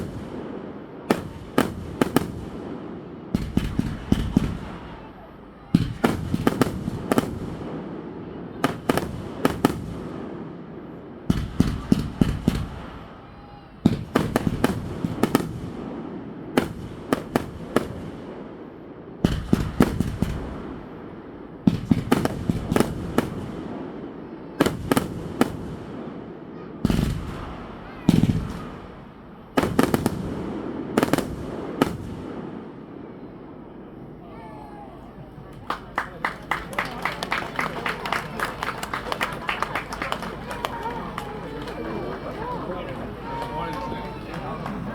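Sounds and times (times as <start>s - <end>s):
fireworks cracking: 0.0s - 33.0s, 35.4s - 44.9s
low fireworks boom: 0.0s - 34.2s.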